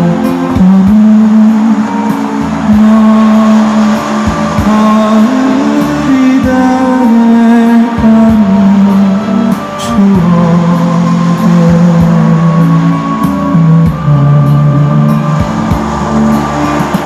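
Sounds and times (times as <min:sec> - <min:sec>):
slow melody with accompaniment: 0:00.0 - 0:17.0.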